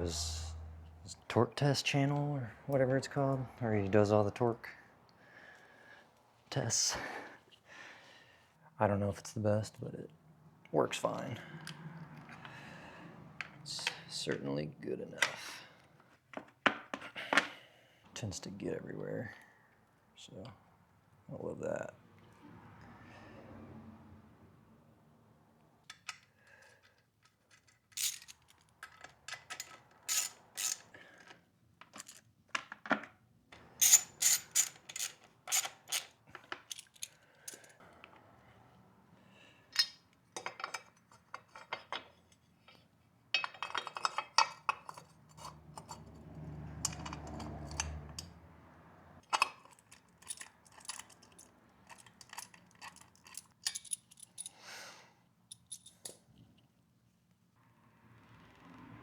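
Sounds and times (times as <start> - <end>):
metal tools clicking and clinking: 25.9 - 32.3, 33.6 - 37.8, 39.7 - 42.8, 43.4 - 46.2, 46.8 - 48.4, 49.2 - 54.6, 55.5 - 56.2.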